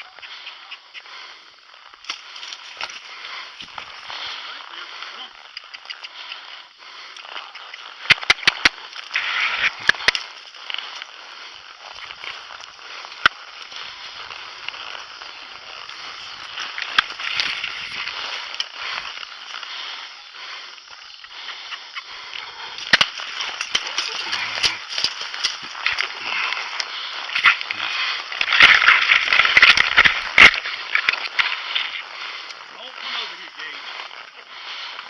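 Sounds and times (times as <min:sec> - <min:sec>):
crackling rustling noise: 0:00.0 - 0:35.0
sharp snaps and clicks: 0:05.0 - 0:19.6, 0:20.9 - 0:32.6.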